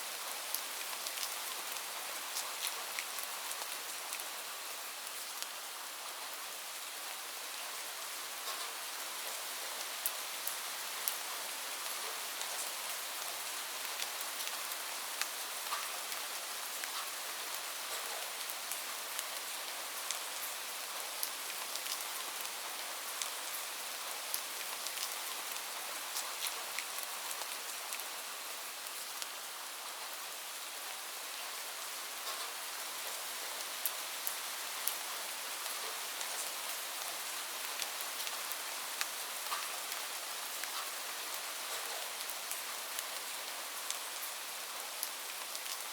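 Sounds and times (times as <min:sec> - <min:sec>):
light rain hiss: 0:00.0 - 0:45.9
raindrops ticking on a surface: 0:00.1 - 0:05.6, 0:08.4 - 0:30.1, 0:32.1 - 0:45.9.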